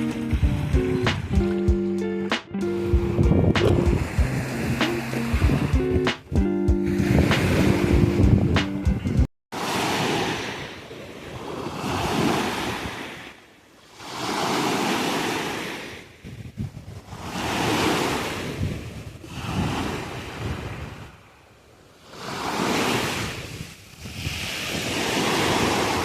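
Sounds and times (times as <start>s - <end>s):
wind buffeting microphone: 0.0s - 1.9s, 2.7s - 9.3s, 16.0s - 21.3s, 22.6s - 26.0s
sea waves washing onto beach: 2.7s - 8.2s, 9.5s - 26.0s.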